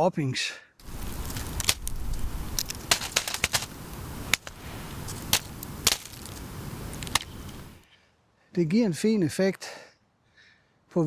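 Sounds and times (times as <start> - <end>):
small objects ticking on forest floor: 0.8 - 7.8.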